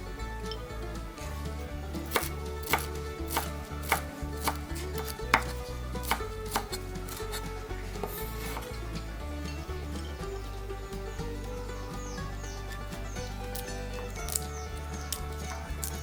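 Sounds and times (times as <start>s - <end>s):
knife chopping on cutting board: 2.1s - 8.7s, 14.2s - 14.4s.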